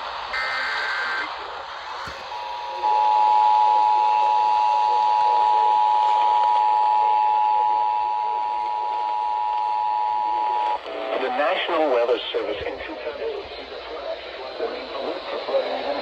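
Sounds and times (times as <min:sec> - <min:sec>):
faint broadcast hiss: 0:10.4 - 0:16.0.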